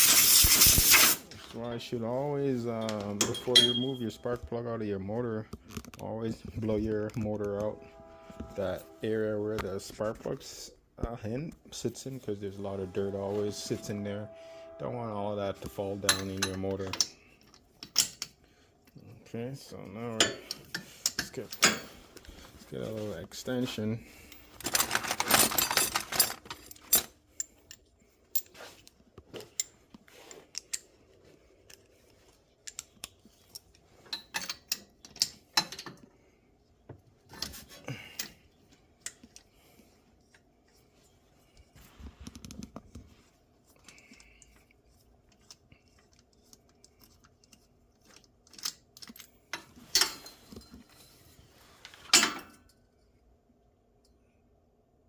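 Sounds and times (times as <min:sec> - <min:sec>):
metal tools clinking: 0:02.8 - 0:04.4, 0:12.9 - 0:18.4, 0:20.1 - 0:22.0, 0:24.0 - 0:28.6, 0:48.1 - 0:51.3, 0:51.9 - 0:52.8.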